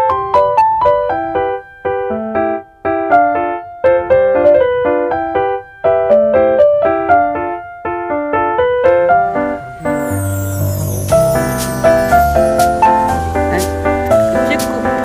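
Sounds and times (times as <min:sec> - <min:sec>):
light keyboard melody: 0:00.0 - 0:15.0.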